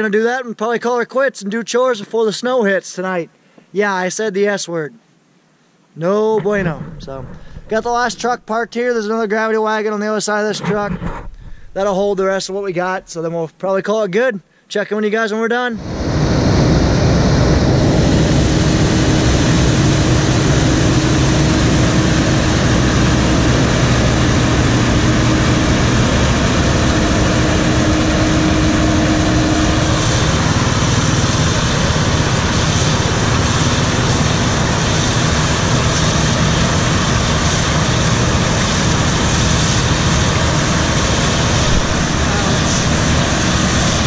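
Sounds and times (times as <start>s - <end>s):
combine harvester running: 6.4s - 8.3s, 15.8s - 44.0s.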